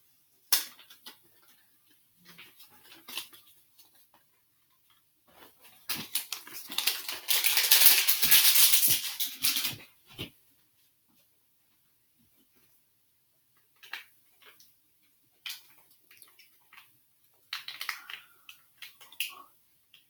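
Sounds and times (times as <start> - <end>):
packaging crinkling and crackling: 5.3 - 9.9.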